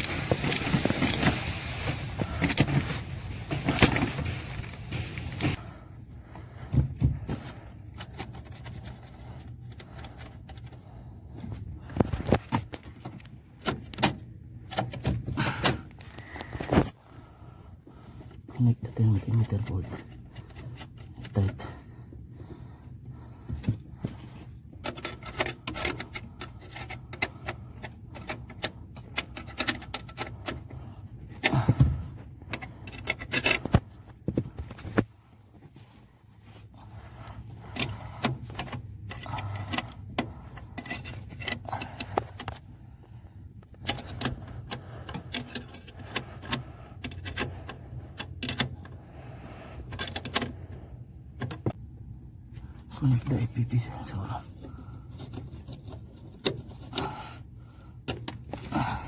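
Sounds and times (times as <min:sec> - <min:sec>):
steady low hum: 0:00.0 - 0:59.0.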